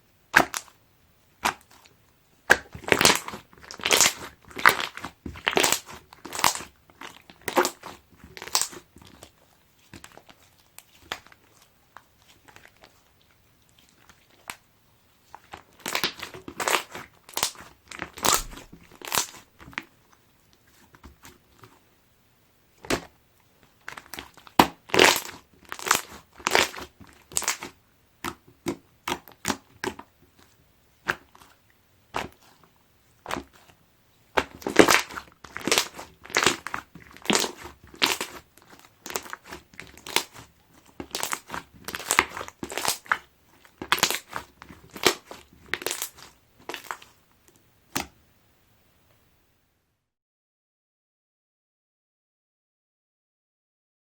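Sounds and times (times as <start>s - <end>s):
slime squishing with wet pops: 0.3s - 0.8s, 1.4s - 21.8s, 22.7s - 48.2s.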